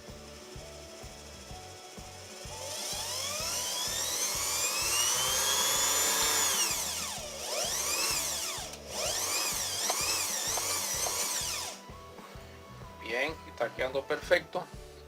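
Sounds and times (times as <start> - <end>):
sewing machine motor whine: 0.1 - 11.8.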